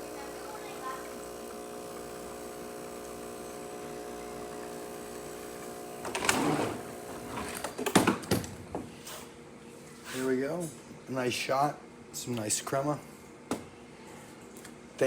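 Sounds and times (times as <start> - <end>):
espresso machine pump humming: 0.0 - 7.7.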